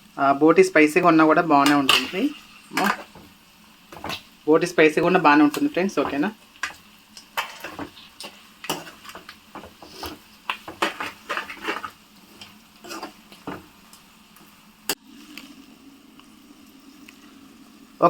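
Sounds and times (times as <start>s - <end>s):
spoon scraping a cooking pan: 1.6s - 15.0s.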